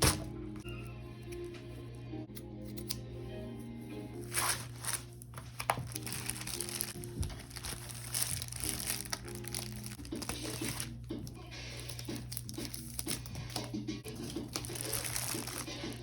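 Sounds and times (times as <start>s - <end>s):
background music: 0.0s - 16.0s
packaging crinkling and tearing: 4.2s - 16.0s.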